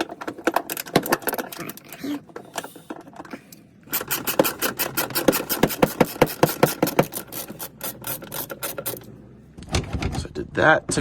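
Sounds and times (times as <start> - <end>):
hand ratchet clicking: 3.9 - 9.1.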